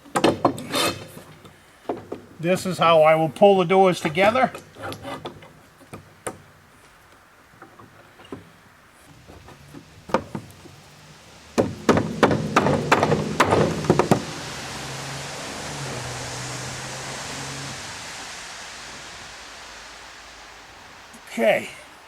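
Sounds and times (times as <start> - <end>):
steady low hum: 8.8 - 22.0
wooden boards knocking: 9.3 - 10.7, 11.6 - 14.3.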